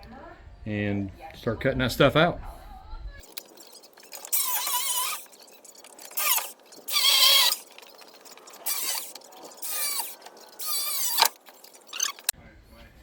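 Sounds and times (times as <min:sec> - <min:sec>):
bolt squealing metal on metal: 0:03.2 - 0:12.3.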